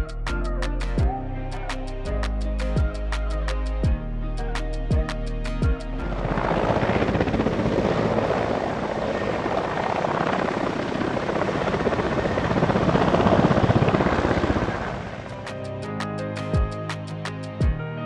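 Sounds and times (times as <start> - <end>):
helicopter rotor chopping: 5.0 - 17.8.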